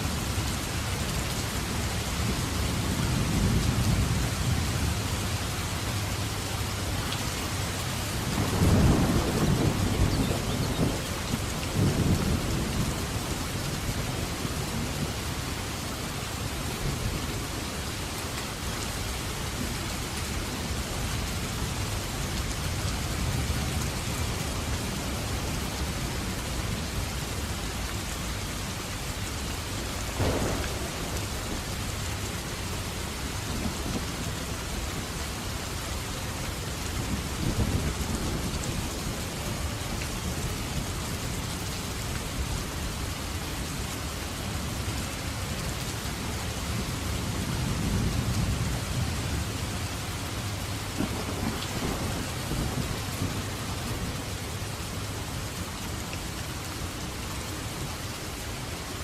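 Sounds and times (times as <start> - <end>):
heavy rain: 0.0 - 59.0
low rolling thunder rumbles: 1.9 - 5.4, 8.0 - 15.6, 30.0 - 35.2, 36.7 - 41.4, 46.6 - 54.7
sharp thunder crack: 30.2 - 31.9.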